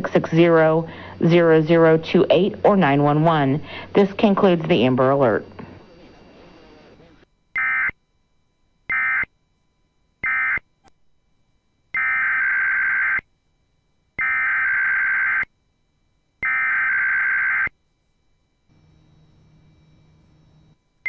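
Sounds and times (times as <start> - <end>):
screechy data bursts: 0.0 - 8.0, 8.9 - 9.3, 10.2 - 10.6, 11.9 - 13.2, 14.2 - 15.5, 16.4 - 17.7.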